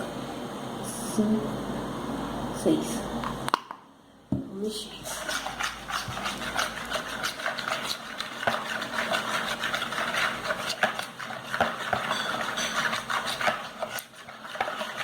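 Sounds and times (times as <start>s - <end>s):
utensil stirring slime: 4.8s - 15.0s
utensil scraping and clicking: 5.2s - 15.0s.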